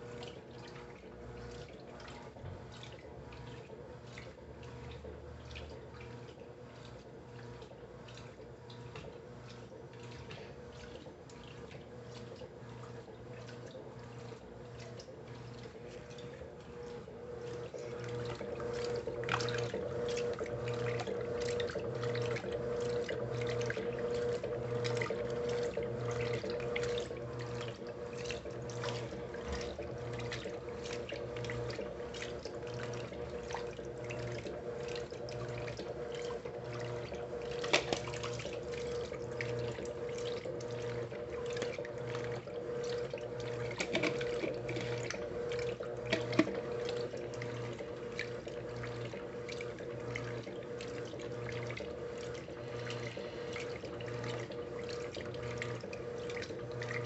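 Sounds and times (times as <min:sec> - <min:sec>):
water pouring into washing machine: 0:00.0 - 0:57.0
steady hum: 0:15.4 - 0:57.0.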